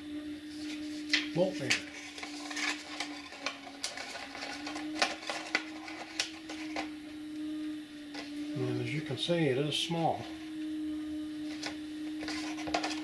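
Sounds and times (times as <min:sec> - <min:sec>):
low hum: 0:00.0 - 0:13.0
packaging rustling: 0:00.7 - 0:06.9.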